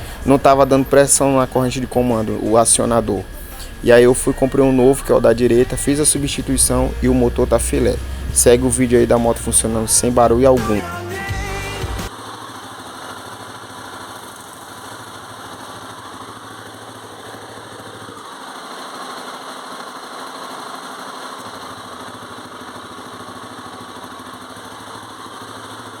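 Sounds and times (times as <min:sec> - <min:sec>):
motorcycle engine idling: 0:00.0 - 0:26.0.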